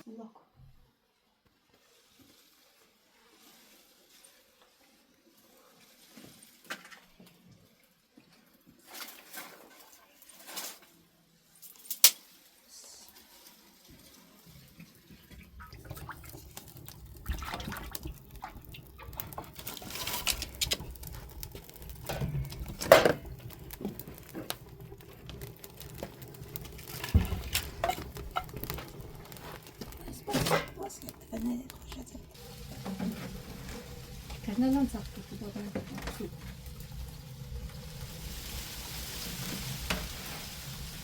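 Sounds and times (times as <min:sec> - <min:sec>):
liquid pouring into a pot: 0:13.2 - 0:41.0.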